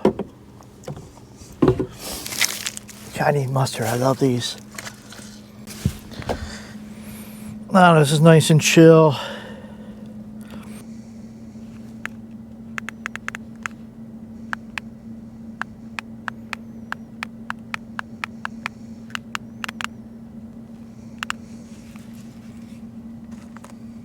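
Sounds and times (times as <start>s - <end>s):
steady low hum: 0.0s - 24.0s
sharp clicks: 12.8s - 13.8s, 14.5s - 14.9s, 15.6s - 20.0s, 21.2s - 21.4s.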